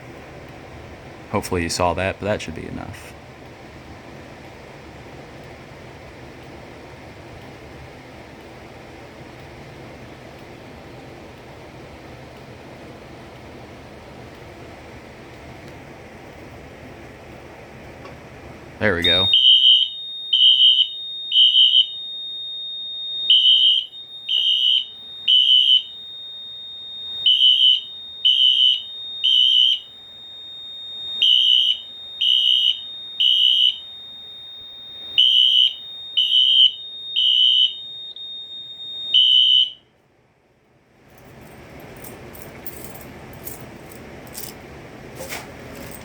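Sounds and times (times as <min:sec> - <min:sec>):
fire alarm horns beeping: 0:18.8 - 0:39.9.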